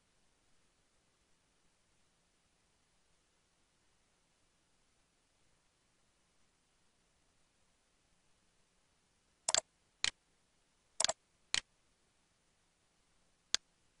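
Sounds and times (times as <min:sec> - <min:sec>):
computer mouse clicking: 0:09.5 - 0:10.2, 0:11.0 - 0:11.7.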